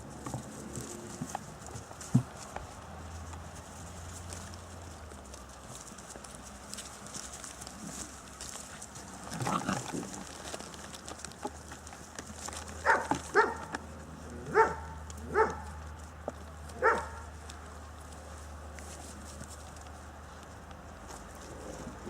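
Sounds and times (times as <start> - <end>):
puppies barking: 12.8 - 13.8, 14.4 - 15.9, 16.7 - 17.4.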